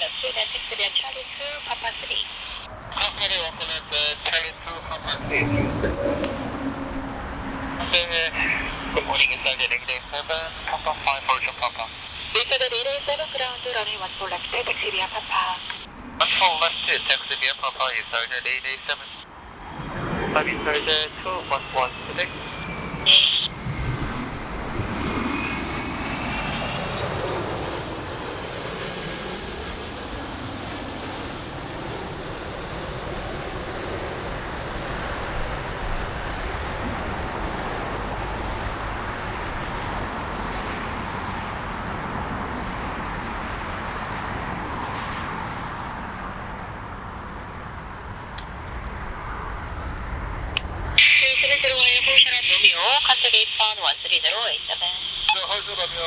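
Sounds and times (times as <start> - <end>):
jet engines passing: 0.0 - 56.0
wind rumbling on microphone: 2.6 - 9.6, 15.8 - 16.4, 19.4 - 21.1, 22.2 - 28.4, 31.4 - 51.0.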